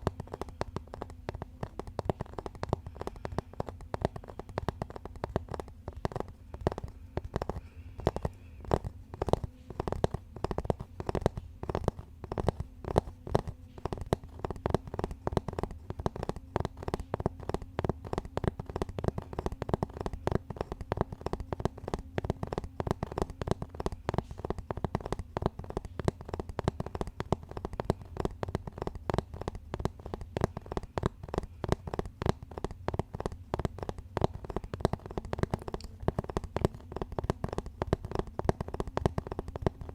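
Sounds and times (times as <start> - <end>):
fingertips tapping on objects: 0.0 - 39.9.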